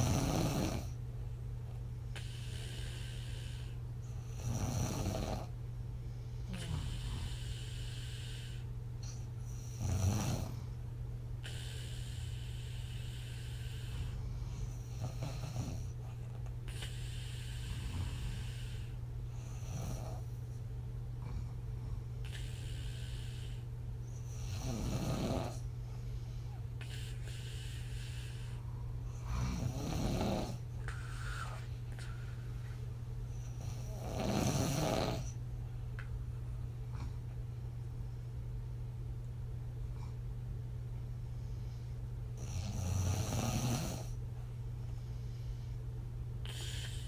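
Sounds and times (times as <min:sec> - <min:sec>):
woman snoring: 0:00.0 - 0:01.0, 0:02.2 - 0:05.5, 0:06.5 - 0:10.6, 0:11.4 - 0:16.0, 0:16.7 - 0:20.3, 0:24.3 - 0:25.6, 0:29.2 - 0:31.7, 0:33.5 - 0:35.4, 0:42.4 - 0:44.2, 0:46.4 - 0:47.0
soft airy breaths: 0:00.0 - 0:01.1, 0:01.7 - 0:38.7, 0:39.8 - 0:47.0
steady low hum: 0:00.0 - 0:47.0.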